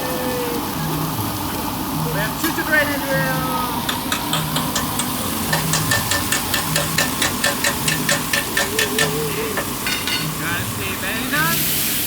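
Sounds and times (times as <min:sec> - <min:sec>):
food sizzling on hot plate: 0:00.0 - 0:12.0
metal spatulas clacking on griddle: 0:03.9 - 0:10.4.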